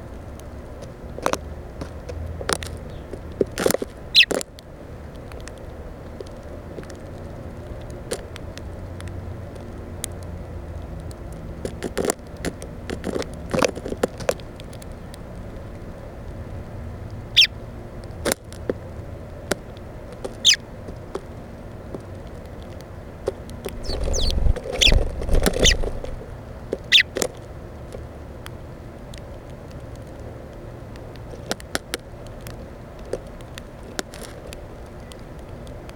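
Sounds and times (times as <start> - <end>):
birds pecking on plastic: 0.1 - 35.9.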